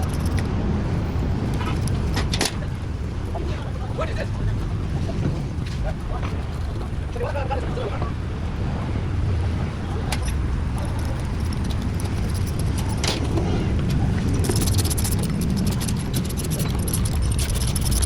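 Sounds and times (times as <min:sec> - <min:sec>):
sharp clicks: 0:00.0 - 0:03.4, 0:09.8 - 0:18.0
low mechanical rumble: 0:00.0 - 0:18.0
rapid metallic rattling: 0:00.0 - 0:18.0.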